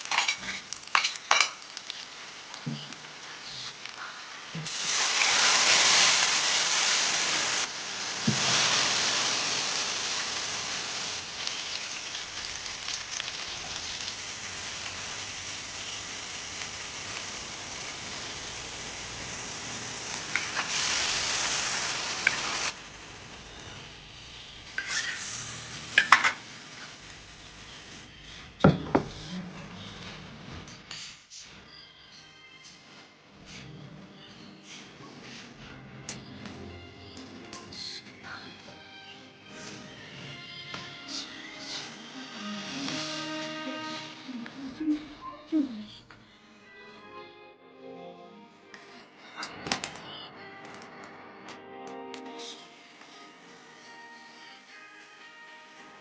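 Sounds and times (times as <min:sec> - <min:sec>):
food sizzling in hot oil: 0:00.0 - 0:28.8.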